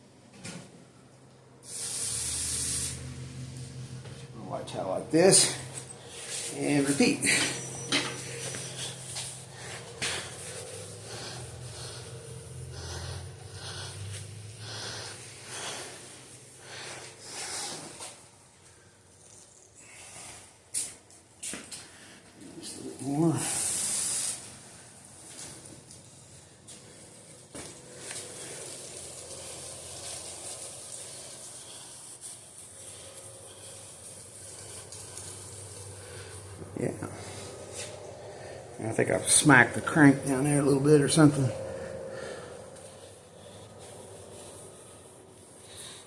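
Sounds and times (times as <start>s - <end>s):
steady hiss: 1.6s - 38.4s
cloth rubbing inside cylinder: 1.8s - 19.6s.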